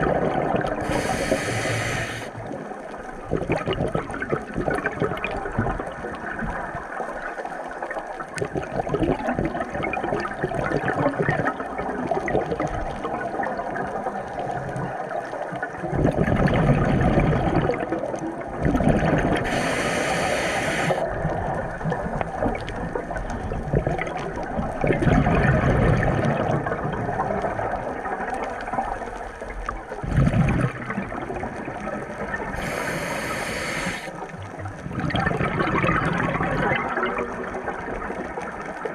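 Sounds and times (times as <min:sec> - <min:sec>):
water splashing and gurgling: 0:00.0 - 0:14.8, 0:15.7 - 0:38.9
short hissing bursts: 0:00.8 - 0:02.3, 0:19.4 - 0:21.0, 0:32.6 - 0:34.1.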